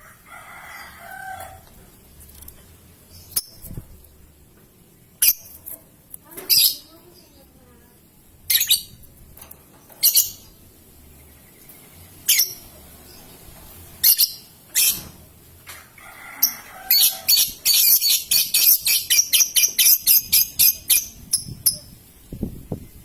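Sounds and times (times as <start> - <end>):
lovebird calling: 16.4 - 22.0.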